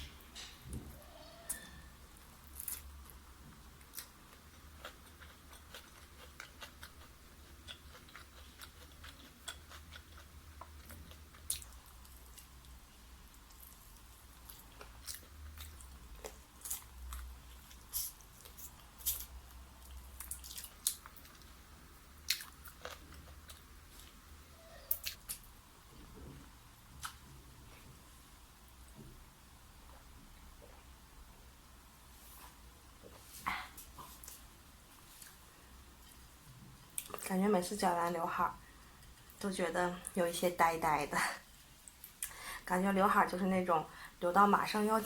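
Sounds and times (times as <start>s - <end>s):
crunchy fried chicken chewing: 3.8s - 12.8s.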